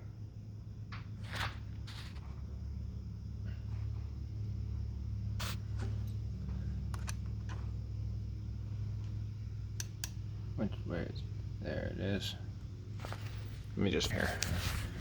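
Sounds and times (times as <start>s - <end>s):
steady low hum: 0.0s - 15.0s
sharp clicks: 6.9s - 7.6s, 9.7s - 10.2s.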